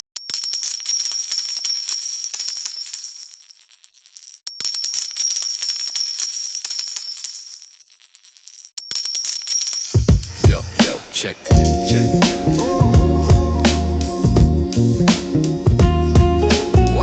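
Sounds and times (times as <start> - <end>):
coins falling and clinking: 0.0 - 10.4.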